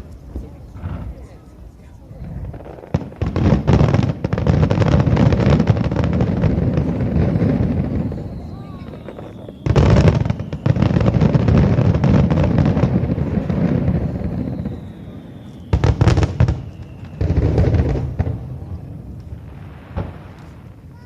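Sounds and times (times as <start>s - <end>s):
firework bangs: 0.0s - 21.0s
firework crackling: 0.0s - 21.0s
faint falling whistles: 7.2s - 11.1s, 13.8s - 18.0s.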